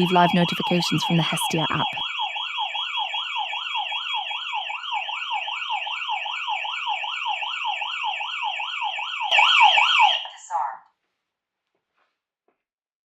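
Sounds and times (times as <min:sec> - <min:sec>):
steady high-pitched tone: 0:00.0 - 0:02.0
warbling alarm siren: 0:00.0 - 0:10.3.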